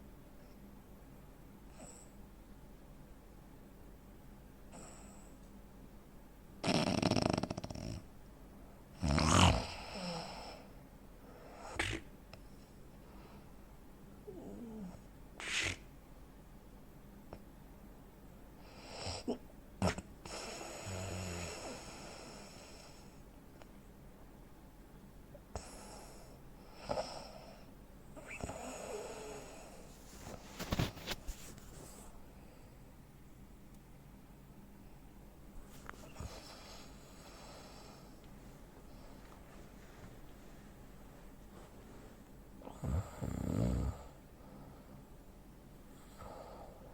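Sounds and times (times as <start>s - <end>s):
snorting: 6.6s - 8.1s, 9.0s - 10.0s
man snoring heavily: 9.0s - 10.5s, 42.7s - 44.2s.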